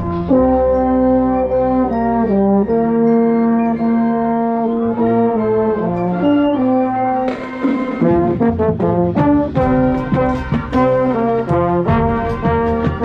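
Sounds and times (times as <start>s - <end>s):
baritone horn: 0.0s - 13.0s
marching band brass chords: 0.0s - 13.0s.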